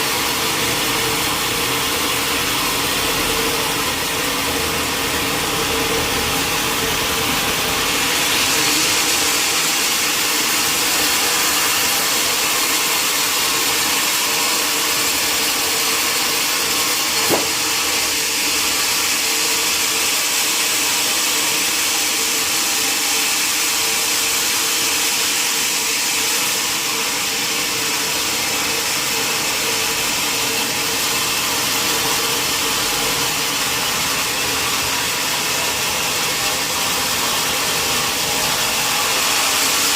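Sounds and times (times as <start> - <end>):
sawmill saw running: 0.0 - 39.9
sharp knock: 17.2 - 17.6.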